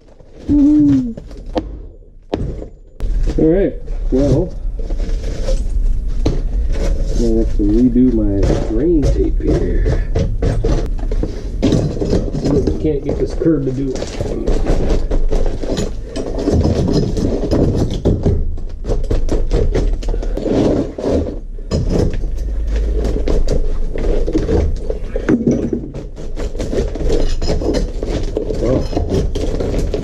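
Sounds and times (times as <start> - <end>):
scraping and rattling of debris: 0.0 - 30.0
sharp demolition knocks: 0.6 - 3.5.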